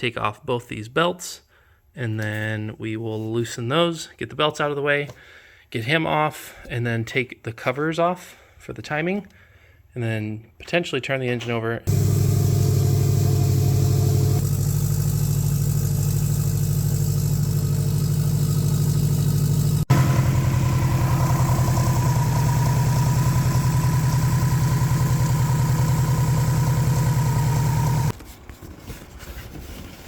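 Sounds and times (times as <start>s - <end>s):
car engine idling: 11.9s - 28.1s.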